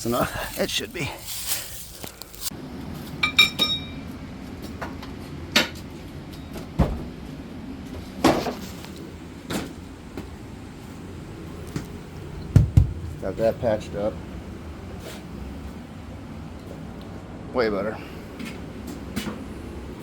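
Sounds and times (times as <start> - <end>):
steady low hum: 0.0 - 20.0
metallic clink: 3.2 - 4.0
knocks and clatter: 12.5 - 13.2.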